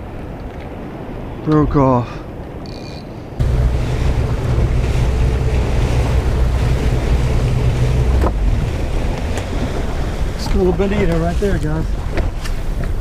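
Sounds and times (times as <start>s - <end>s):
water noise: 0.0s - 13.0s
wind buffeting microphone: 0.0s - 13.0s
boat motor running: 3.4s - 11.0s.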